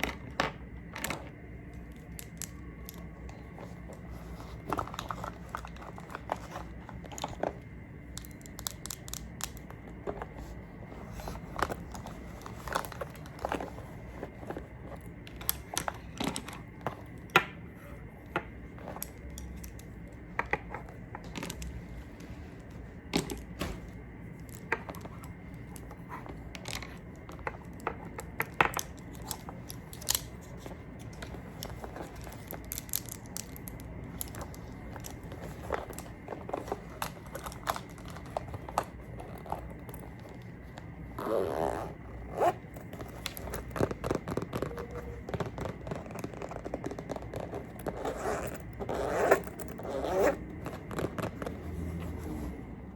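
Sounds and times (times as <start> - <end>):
faint high hum: 0.0 - 52.9
makeup tools clicking and tapping: 8.1 - 9.8.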